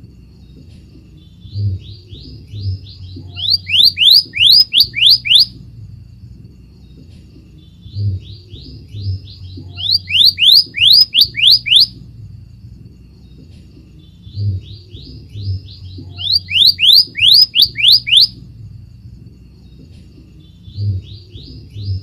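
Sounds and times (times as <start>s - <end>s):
steady low hum: 0.0s - 22.0s
bird song of rising whistles: 2.6s - 5.5s, 9.6s - 12.0s, 14.7s - 18.4s.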